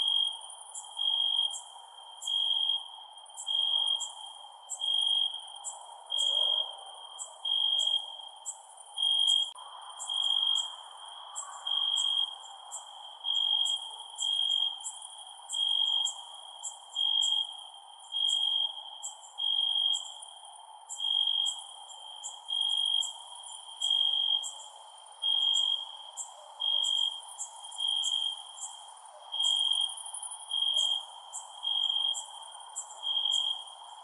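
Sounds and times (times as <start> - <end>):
crickets chirping: 0.0 - 34.0.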